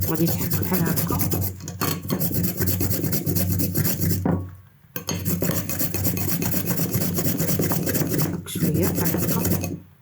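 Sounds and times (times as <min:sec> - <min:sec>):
ginger scraping on a grater: 0:00.0 - 0:04.2, 0:05.1 - 0:09.8.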